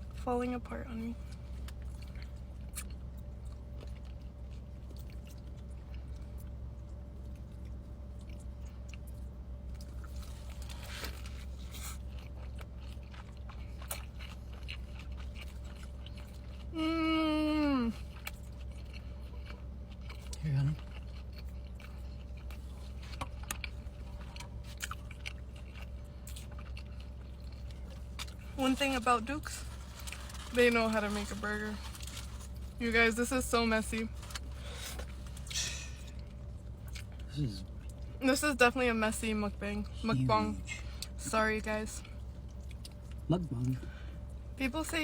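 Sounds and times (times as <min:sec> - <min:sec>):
low steady hum: 0:00.0 - 0:45.0
chewing wet mouth sounds: 0:01.3 - 0:16.8, 0:17.9 - 0:28.5.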